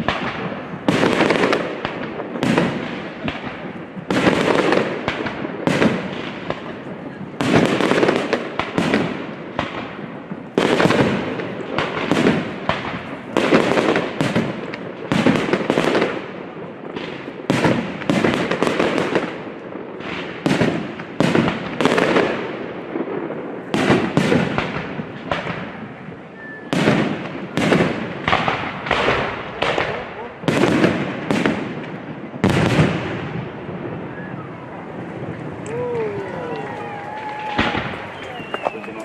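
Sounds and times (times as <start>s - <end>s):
firework shells bursting: 36.8s - 39.0s.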